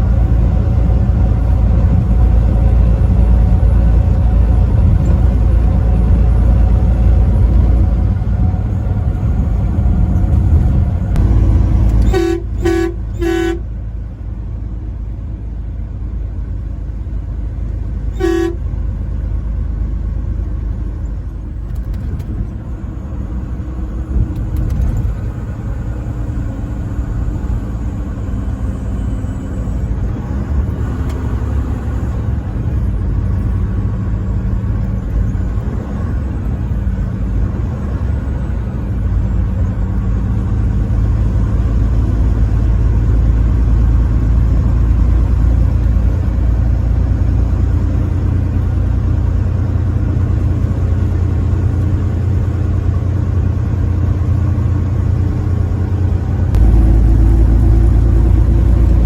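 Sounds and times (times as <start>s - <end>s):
truck engine and road rumble: 0.0s - 59.0s
truck horn blasts: 11.2s - 13.8s, 18.2s - 18.8s, 56.6s - 58.6s.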